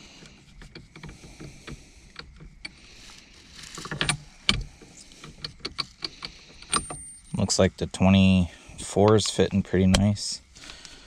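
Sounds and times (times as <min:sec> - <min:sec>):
metal sockets and ratchet clinking: 0:03.6 - 0:07.6.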